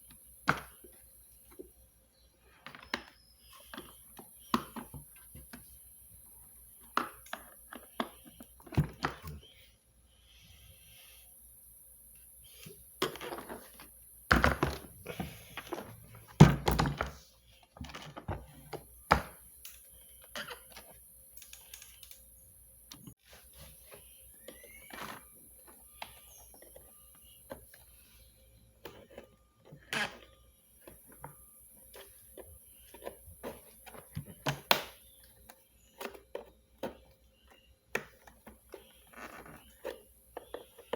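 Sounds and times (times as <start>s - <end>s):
vacuum cleaner parts clicking and knocking: 6.8s - 9.5s, 13.0s - 22.2s.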